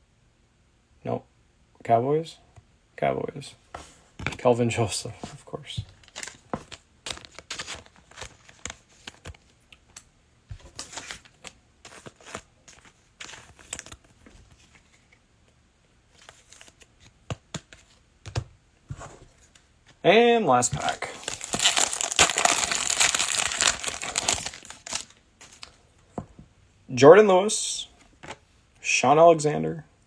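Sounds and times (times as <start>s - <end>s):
foil card packs crinkling: 5.8s - 9.4s, 20.5s - 25.8s
card packs ripping: 20.5s - 25.8s.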